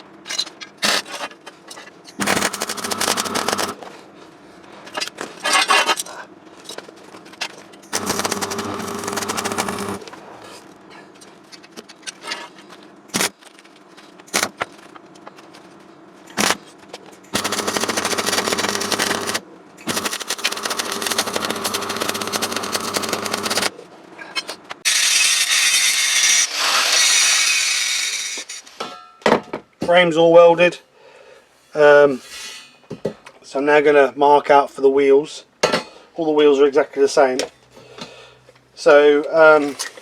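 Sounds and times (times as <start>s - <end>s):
welding arc crackling: 2.2s - 3.8s, 7.9s - 10.4s, 13.1s - 13.3s, 17.3s - 23.7s.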